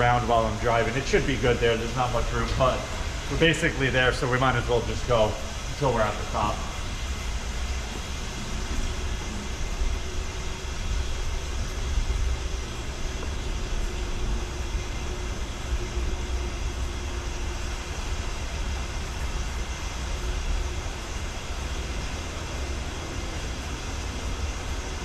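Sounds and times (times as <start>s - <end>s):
water rushing into tank: 0.0s - 25.0s.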